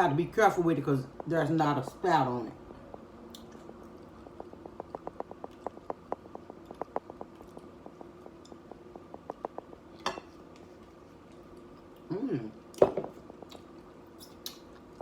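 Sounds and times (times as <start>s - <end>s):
hot sauce ticking and dripping: 2.8s - 12.1s, 12.7s - 15.0s.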